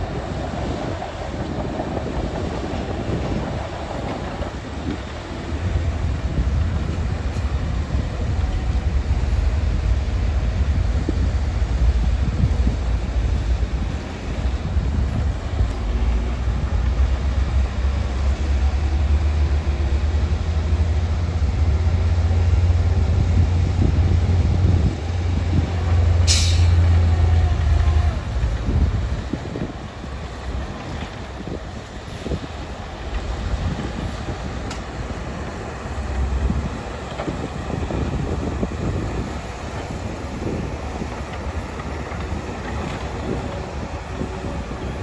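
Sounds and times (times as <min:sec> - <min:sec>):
diesel machinery rumbling: 0:00.0 - 0:45.0
air hiss: 0:26.3 - 0:27.0.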